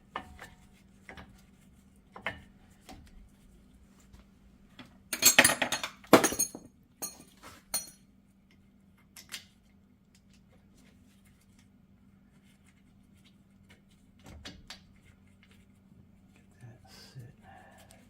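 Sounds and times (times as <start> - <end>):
metal parts rattling: 5.2 - 7.9.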